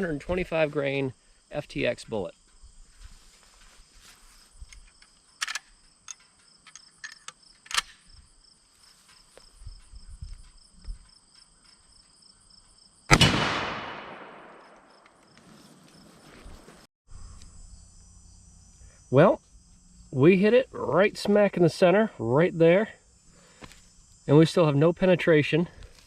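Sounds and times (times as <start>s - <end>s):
rifle shot with echo: 13.1s - 15.1s.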